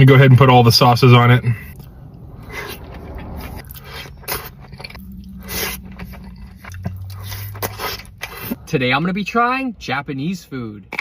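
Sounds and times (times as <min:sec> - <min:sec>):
close-miked chewing and crunching: 0:01.6 - 0:08.7.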